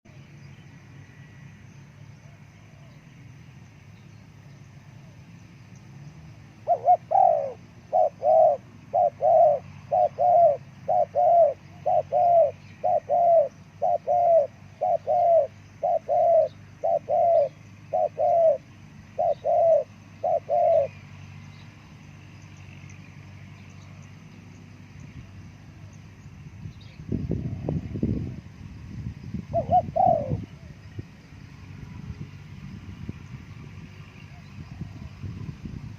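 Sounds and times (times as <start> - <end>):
dove cooing: 6.6 - 21.1, 29.4 - 30.8.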